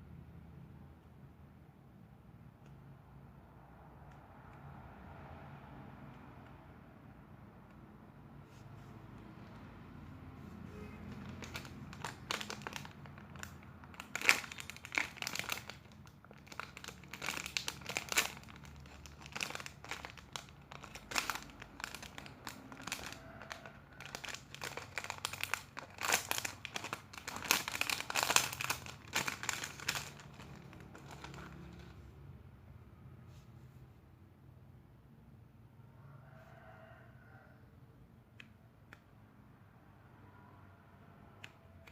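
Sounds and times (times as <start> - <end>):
plastic crinkling: 10.7 - 32.0.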